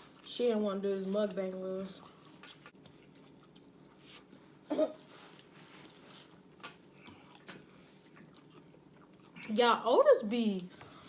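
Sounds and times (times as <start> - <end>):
low room hum: 0.0 - 11.0
person eating: 2.1 - 9.6.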